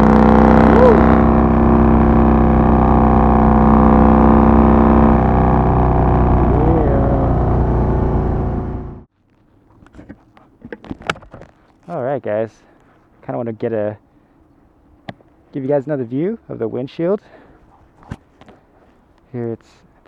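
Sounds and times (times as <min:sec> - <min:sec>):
motorcycle engine running: 0:00.0 - 0:09.1.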